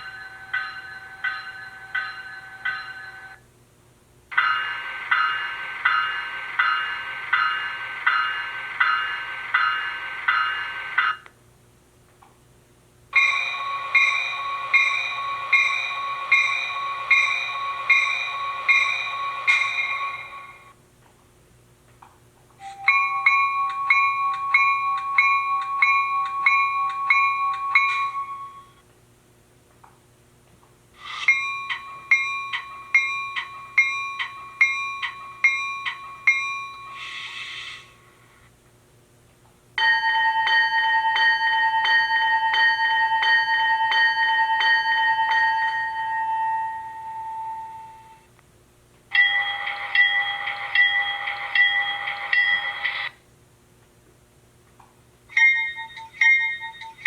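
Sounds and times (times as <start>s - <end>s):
locomotive bell ringing from speaker: 13.2s - 20.7s, 22.6s - 28.8s, 31.1s - 37.0s, 39.8s - 48.3s, 49.1s - 53.1s, 55.3s - 57.0s
lower-toned bell ringing faster: 13.2s - 20.7s, 22.6s - 28.8s, 31.1s - 37.0s
brief hiss: 37.0s - 38.0s.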